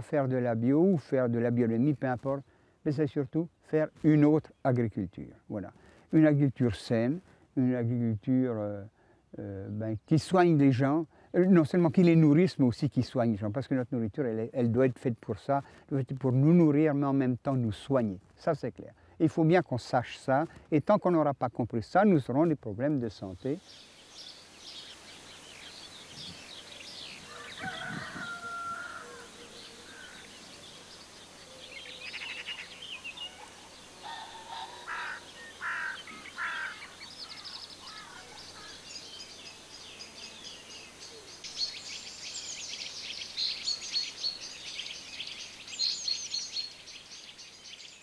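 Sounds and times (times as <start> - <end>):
small birds chirping: 9.4 - 12.7, 22.4 - 48.0
rooster crowing: 27.2 - 30.3, 33.4 - 36.9.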